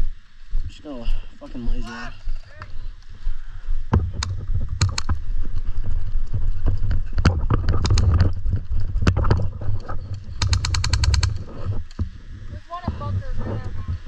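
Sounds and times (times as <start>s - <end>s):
sharp clicks and snaps: 4.2s - 5.2s, 7.2s - 8.4s, 9.0s - 12.0s.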